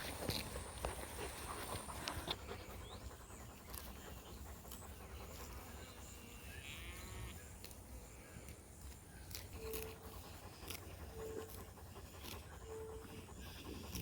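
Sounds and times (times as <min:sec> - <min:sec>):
dog panting: 0:00.0 - 0:06.4, 0:09.5 - 0:14.0.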